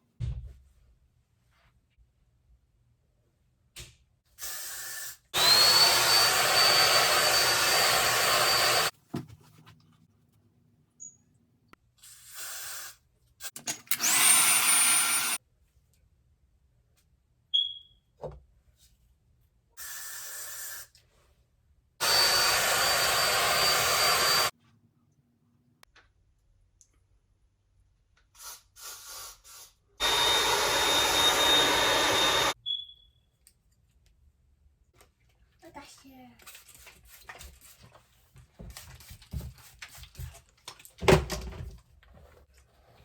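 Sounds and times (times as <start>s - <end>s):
hair dryer motor whining: 5.4s - 8.9s, 14.0s - 15.4s, 22.0s - 24.5s, 30.0s - 32.6s.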